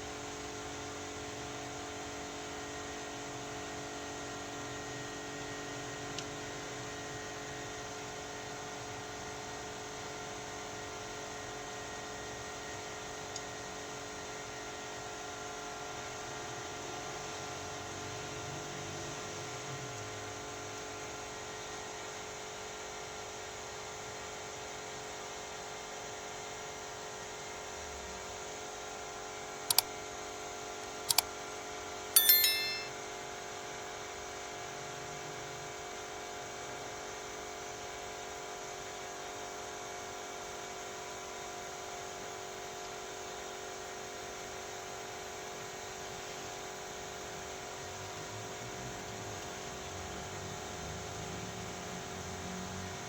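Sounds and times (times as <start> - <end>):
sharp clicks: 32.2 - 32.9.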